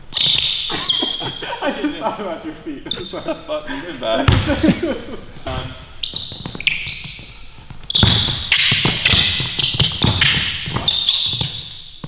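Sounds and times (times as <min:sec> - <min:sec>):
shoes squeaking on court: 0:00.0 - 0:01.8, 0:02.8 - 0:03.3, 0:04.2 - 0:12.0
basketball bouncing on wooden floor: 0:04.3 - 0:12.0.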